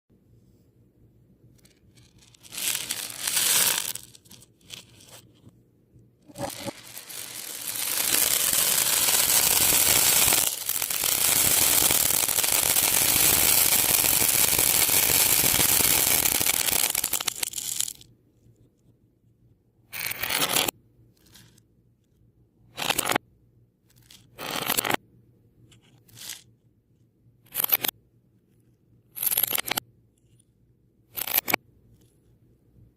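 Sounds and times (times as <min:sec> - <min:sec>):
crystal beads clicking together: 0:02.4 - 0:04.4, 0:06.3 - 0:18.0.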